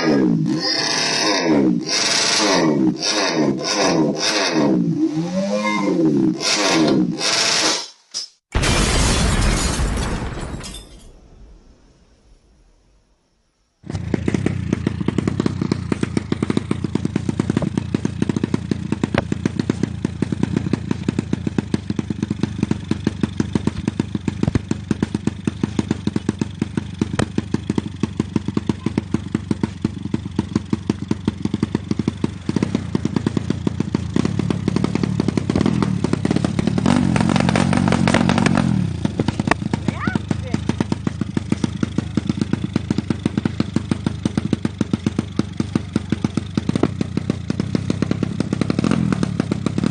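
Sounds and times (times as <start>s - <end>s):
motorcycle engine running: 13.8s - 49.9s.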